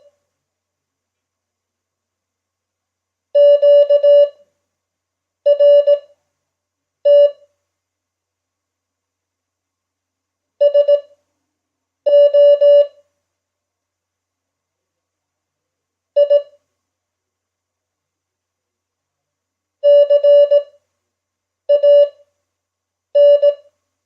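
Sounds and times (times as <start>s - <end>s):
morse code beeps: 3.4s - 4.4s, 5.5s - 6.0s, 7.1s - 7.4s, 10.6s - 11.1s, 12.1s - 12.9s, 16.2s - 16.5s, 19.8s - 20.7s, 21.7s - 22.2s, 23.2s - 23.6s.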